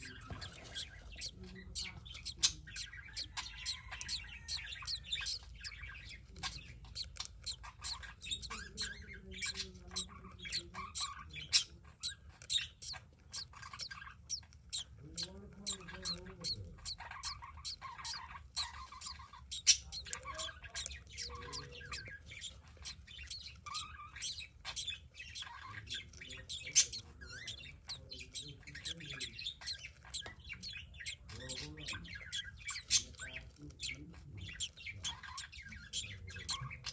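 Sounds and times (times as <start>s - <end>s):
budgerigars chirping and chattering: 0.0s - 36.9s.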